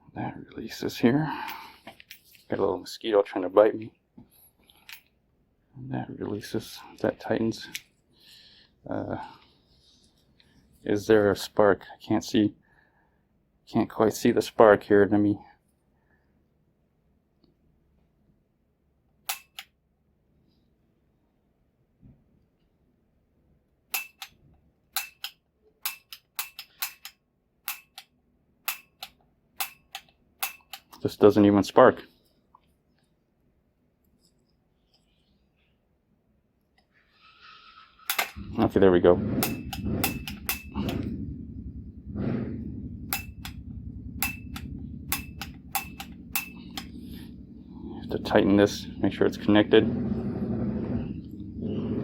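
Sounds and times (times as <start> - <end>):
piezo igniter clicking: 19.2 - 19.7, 23.9 - 31.0, 39.4 - 41.2, 43.1 - 47.0.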